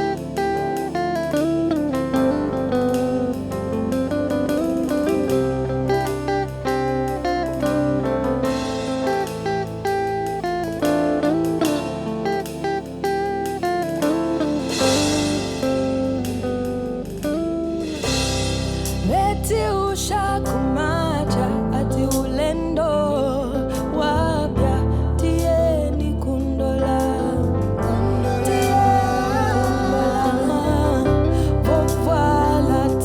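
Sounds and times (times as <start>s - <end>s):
live band music: 0.0s - 19.6s
plucked guitar lines: 0.0s - 33.0s
person singing: 19.0s - 33.0s.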